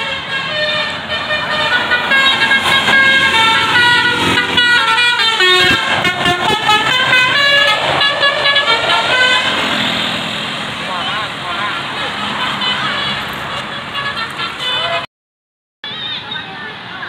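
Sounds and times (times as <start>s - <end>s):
musical air horn tune: 0.0s - 9.7s.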